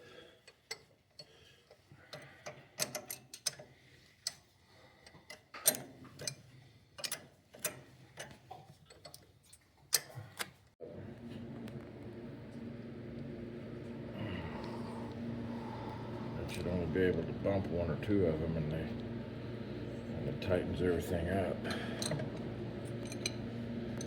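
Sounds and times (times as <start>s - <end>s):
metal tools clicking together: 2.1s - 4.4s, 7.0s - 8.3s, 23.0s - 23.4s.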